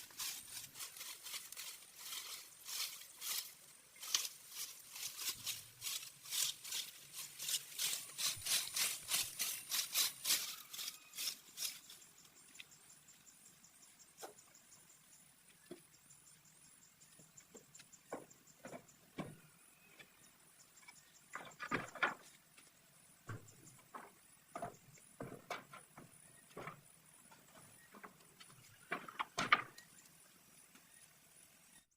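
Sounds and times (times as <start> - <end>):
rhythmic scraping strokes: 0.0 - 12.1.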